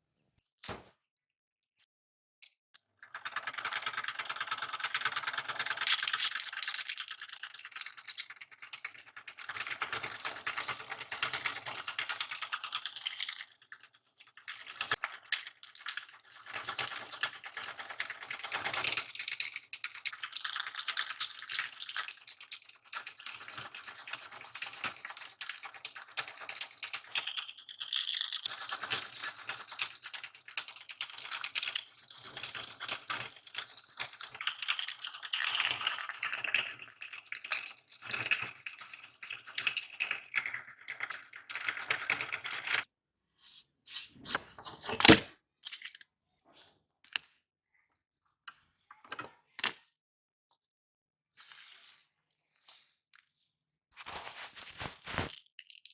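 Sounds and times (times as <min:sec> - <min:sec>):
candy crunching in meat grinder: 0:03.1 - 0:42.8.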